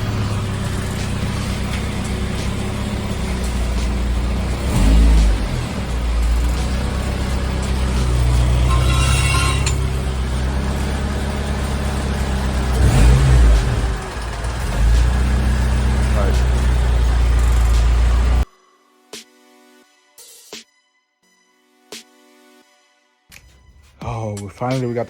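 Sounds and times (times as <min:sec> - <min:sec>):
car engine revving: 0:00.0 - 0:18.4
background music: 0:00.0 - 0:25.0.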